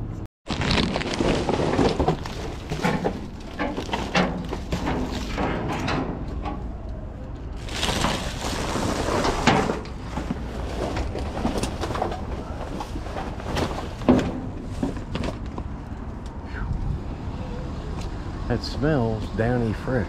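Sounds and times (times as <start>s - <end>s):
rustling and crunching trash bags: 0.5s - 5.8s, 7.6s - 15.8s.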